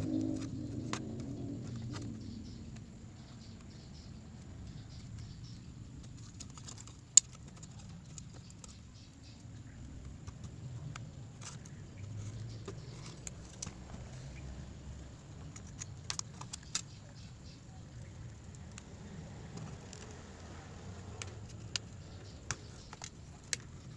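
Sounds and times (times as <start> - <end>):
low steady hum: 0.0 - 23.9
small tools clicking and tapping: 6.0 - 9.2, 15.4 - 17.5, 19.5 - 23.9.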